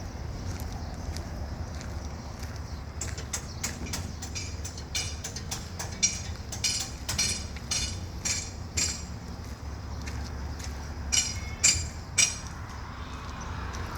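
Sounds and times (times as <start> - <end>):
metal tools clinking on metal: 3.0 - 9.3, 11.1 - 12.6.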